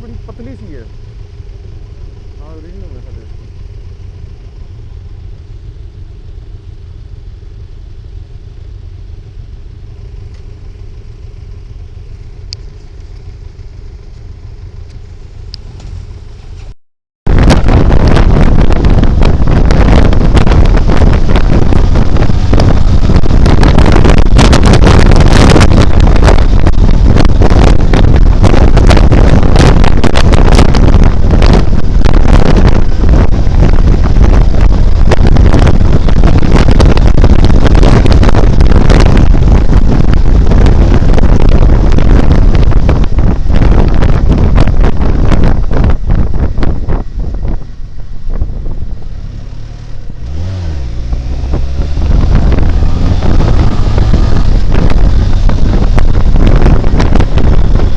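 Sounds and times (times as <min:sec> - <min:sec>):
motorcycle engine: 0:00.0 - 0:57.9
wind buffeting microphone: 0:17.3 - 0:57.9.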